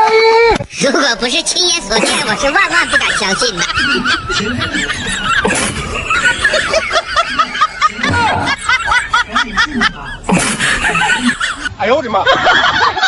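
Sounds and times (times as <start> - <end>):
snickering laughter: 1.8 - 11.7.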